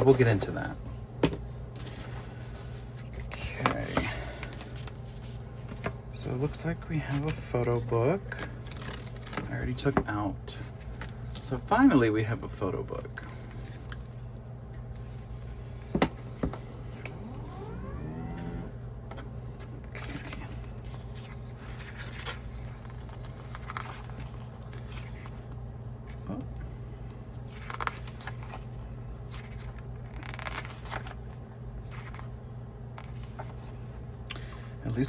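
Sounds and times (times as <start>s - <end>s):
book pages turning: 0.0s - 11.9s, 12.8s - 14.2s, 19.2s - 26.2s, 27.4s - 32.3s, 33.0s - 34.0s
short rising squeak: 17.1s - 18.7s.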